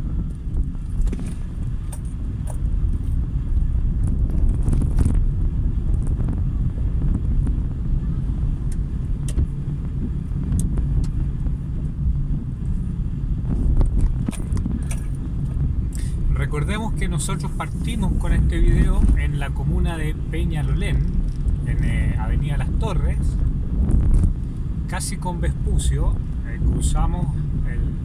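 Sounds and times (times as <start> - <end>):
car road and engine rumble: 0.0 - 28.0.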